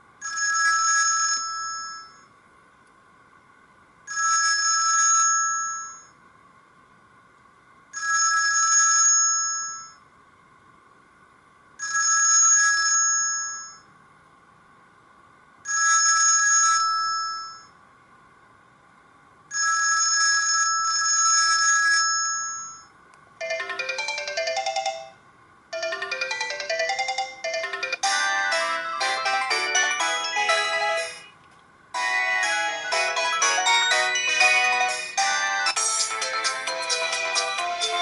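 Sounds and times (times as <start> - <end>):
ringtone of held notes: 0.2 - 2.3, 4.1 - 6.2, 8.0 - 10.0, 11.8 - 13.9, 15.7 - 17.7, 19.5 - 25.2, 25.8 - 31.3, 32.0 - 38.0
quick ringtone melody: 19.5 - 25.2, 25.8 - 31.3, 32.0 - 38.0.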